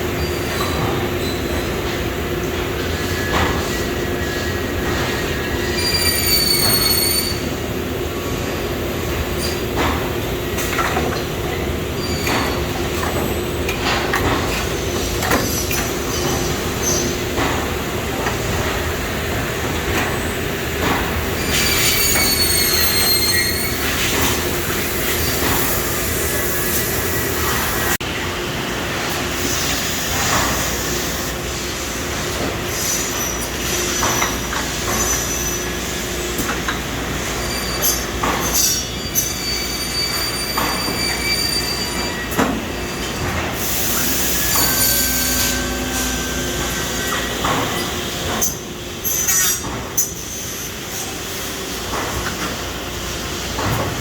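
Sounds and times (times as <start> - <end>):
high squealing whines: 5.7 - 7.5, 21.4 - 24.0.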